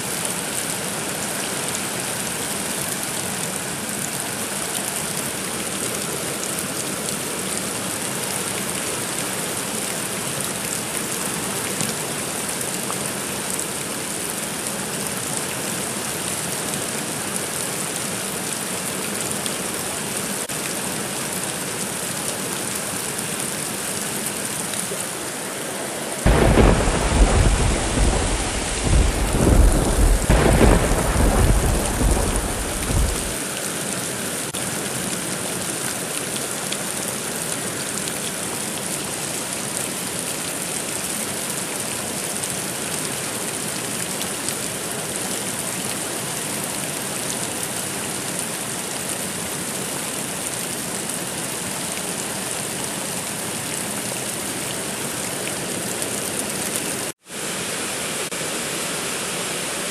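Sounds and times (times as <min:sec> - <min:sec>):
steady rain: 0:00.0 - 0:59.9
thunder clap and rumble: 0:26.3 - 0:33.4.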